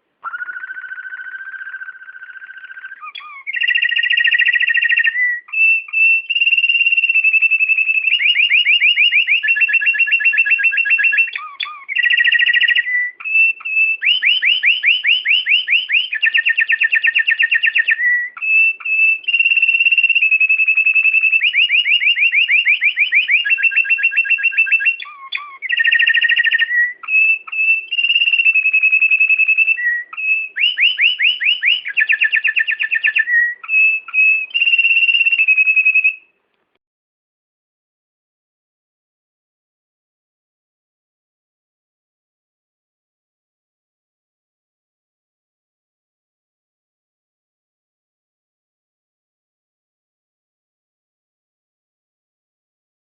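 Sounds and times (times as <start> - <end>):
songbird singing whistles and trills: 0.2 - 36.4.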